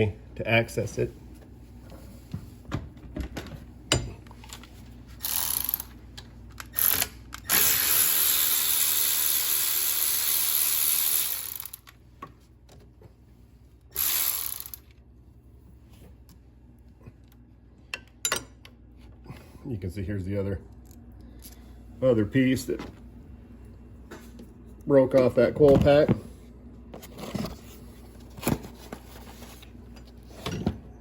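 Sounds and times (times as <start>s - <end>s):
ratchet wrench ratcheting: 5.2s - 6.0s, 6.6s - 11.9s, 13.9s - 14.9s.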